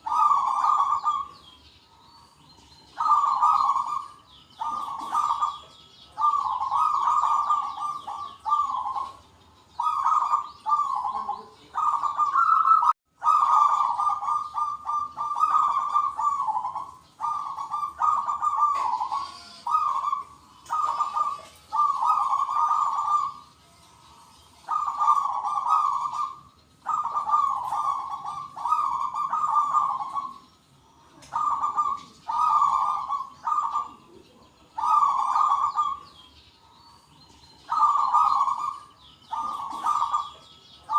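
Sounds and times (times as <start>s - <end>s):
doves cooing: 0.0s - 40.9s
faint high chirping: 0.0s - 40.9s.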